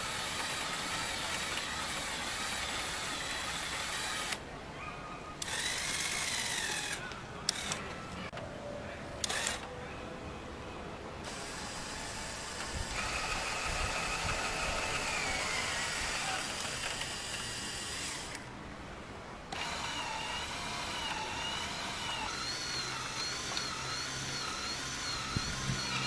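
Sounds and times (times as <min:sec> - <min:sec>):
small electric motors whining: 0:00.0 - 0:04.4, 0:05.4 - 0:08.3, 0:09.2 - 0:09.7, 0:11.2 - 0:18.5, 0:19.5 - 0:26.0
sharp clicks: 0:09.2 - 0:09.7, 0:21.9 - 0:26.0
steady high whine: 0:11.2 - 0:26.0.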